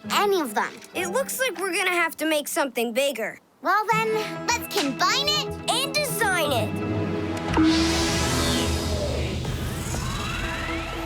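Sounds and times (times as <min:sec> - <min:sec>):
electronic background music: 0:04.2 - 0:11.0
rising glide: 0:07.4 - 0:11.0
sweeping whoosh: 0:07.5 - 0:11.0.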